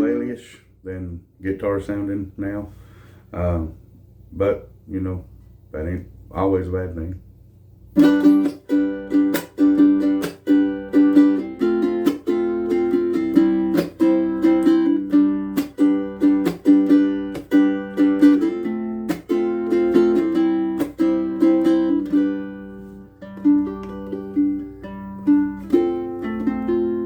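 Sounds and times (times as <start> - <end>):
ukulele plucked notes and chords: 8.0 - 27.0.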